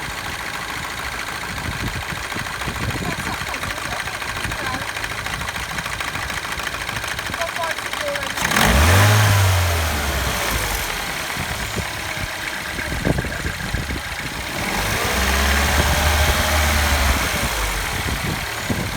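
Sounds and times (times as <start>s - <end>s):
timing chain rattle: 0.2s - 8.9s
car engine revving: 7.6s - 18.9s.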